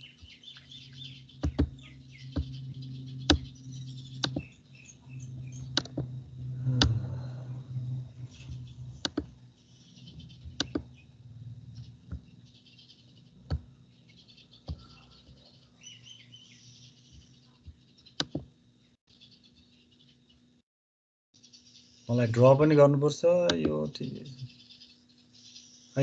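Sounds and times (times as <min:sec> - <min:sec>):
high chirping: 0:00.0 - 0:18.5, 0:21.4 - 0:26.0
faint low hum: 0:00.0 - 0:20.6
sharp clicks and taps: 0:01.4 - 0:02.6, 0:03.3 - 0:03.5, 0:04.2 - 0:04.5, 0:05.7 - 0:06.1, 0:08.5 - 0:09.3, 0:10.5 - 0:10.9, 0:18.2 - 0:18.5, 0:23.5 - 0:23.8.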